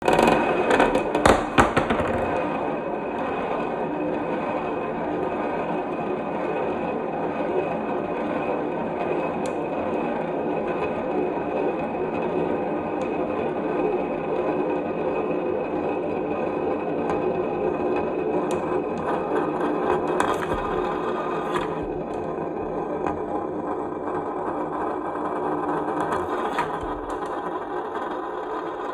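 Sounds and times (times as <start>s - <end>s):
marbles rolling on wooden track: 0.0s - 4.3s, 17.1s - 28.9s.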